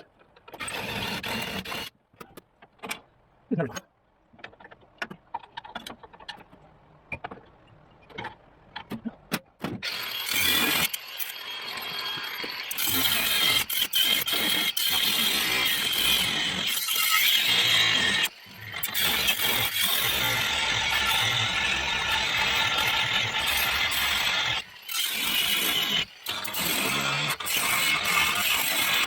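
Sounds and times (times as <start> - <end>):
power tool on sheet metal: 9.8 - 29.0.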